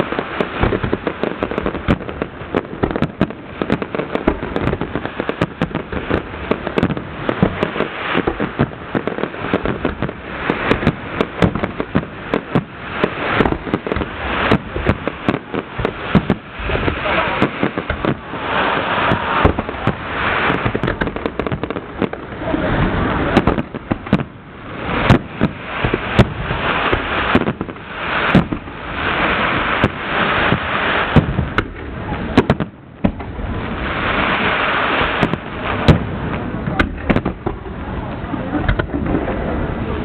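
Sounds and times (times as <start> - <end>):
fireworks bangs: 0.0 - 40.0
fireworks crackling hiss: 0.0 - 40.0.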